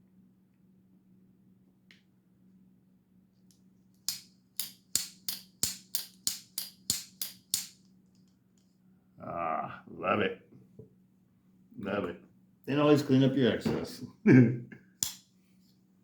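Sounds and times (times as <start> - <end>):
folding knife clicking open and shut: 4.0 - 7.8.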